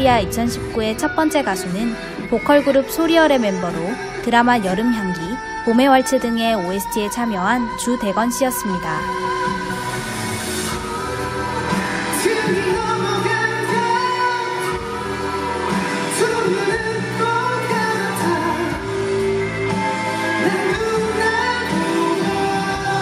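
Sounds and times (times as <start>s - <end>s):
backing music with regular beat: 9.1s - 23.0s
man singing live: 10.8s - 23.0s.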